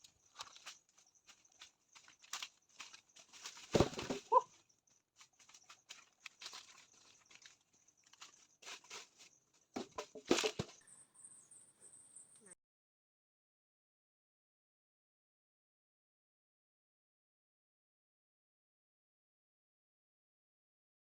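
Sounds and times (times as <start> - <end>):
rustling: 0.0 - 10.8.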